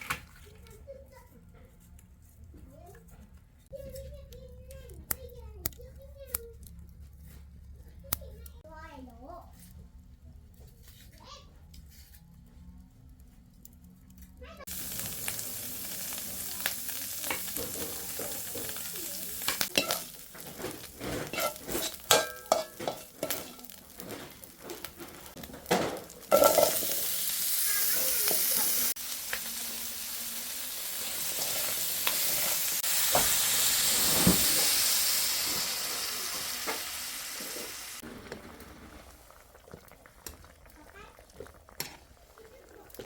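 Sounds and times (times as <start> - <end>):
food sizzling in hot oil: 14.6 - 43.0
utensil scraping a pan: 17.2 - 27.4, 31.0 - 38.9.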